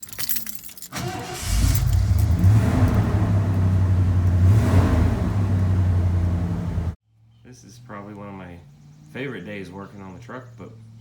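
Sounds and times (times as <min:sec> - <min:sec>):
pickup truck engine running: 0:01.0 - 0:07.0.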